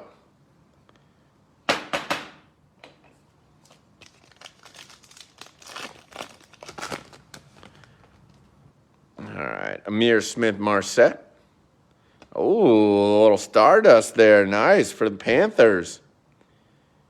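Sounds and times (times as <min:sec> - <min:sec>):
foil pack ripping: 0:03.6 - 0:08.3
wrapper crinkling and clicking: 0:03.6 - 0:08.5.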